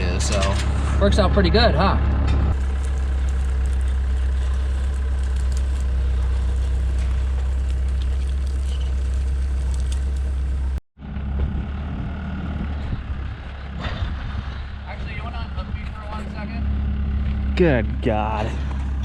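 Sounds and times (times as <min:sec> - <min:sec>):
farm vehicle engine rumble: 0:00.0 - 0:19.0.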